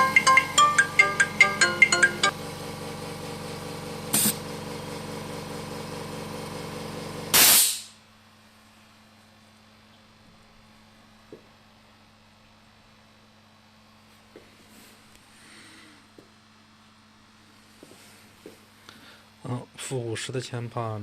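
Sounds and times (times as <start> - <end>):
electronic beeping tune: 0.0 - 2.3
machine humming: 0.0 - 7.2
loud burst of hissing air: 4.1 - 4.4, 7.3 - 8.0
short hiss: 4.1 - 4.4, 7.3 - 8.0.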